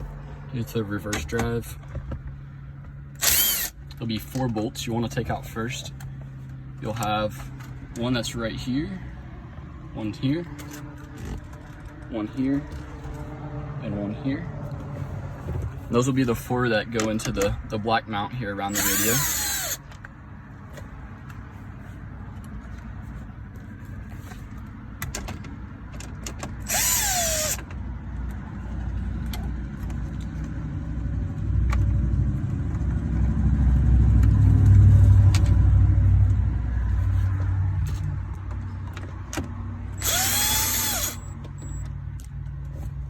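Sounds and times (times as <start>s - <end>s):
impact driver motor whirring: 3.2s - 3.8s, 18.7s - 19.9s, 26.6s - 27.7s, 40.0s - 41.8s.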